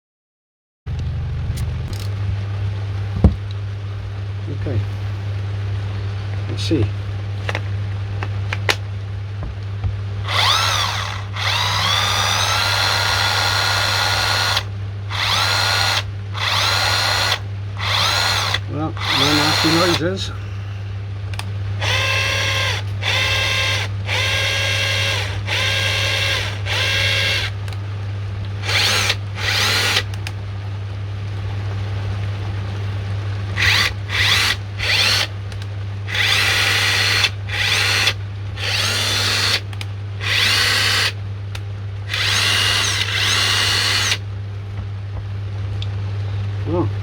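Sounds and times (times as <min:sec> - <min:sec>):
steady low hum: 0:00.9 - 0:47.0
impact wrench motor whine: 0:10.2 - 0:20.1, 0:21.8 - 0:27.6, 0:28.6 - 0:30.3, 0:33.6 - 0:41.2, 0:42.1 - 0:44.2.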